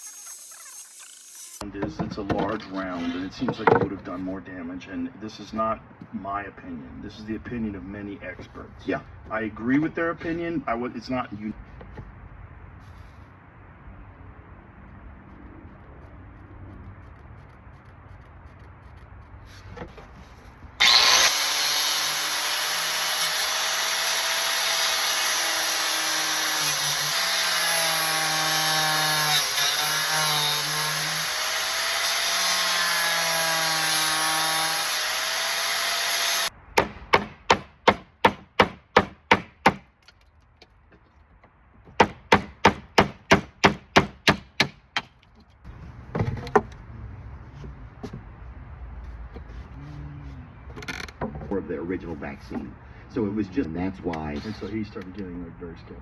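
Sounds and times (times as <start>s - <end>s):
angle grinder cutting metal: 0.0s - 1.6s, 20.8s - 36.5s.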